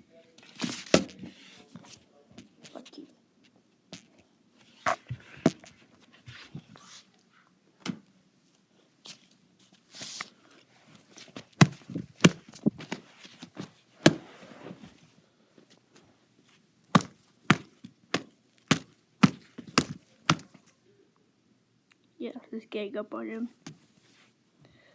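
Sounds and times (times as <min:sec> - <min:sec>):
sharp knocks and taps: 0:16.9 - 0:20.6.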